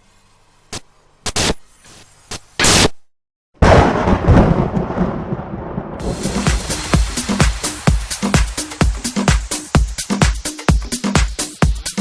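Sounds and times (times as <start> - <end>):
sharp crack-like bursts: 0.7 - 3.1
thunder-like boom: 3.6 - 7.6.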